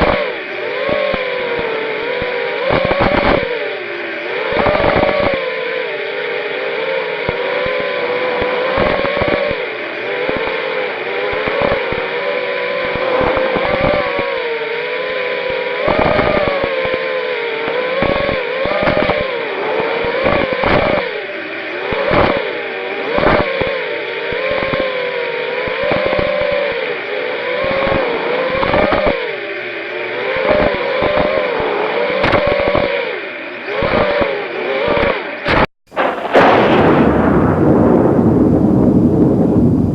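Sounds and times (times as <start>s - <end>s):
motor grinding noise: 0.0s - 36.8s
drone motors whining: 0.0s - 39.9s
loud rushing noise: 35.5s - 39.9s.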